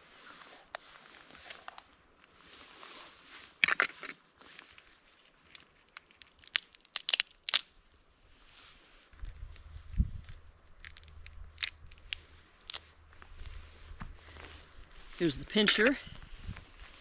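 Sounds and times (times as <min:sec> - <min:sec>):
crab shell cracking: 0:05.4 - 0:07.8, 0:10.6 - 0:12.8.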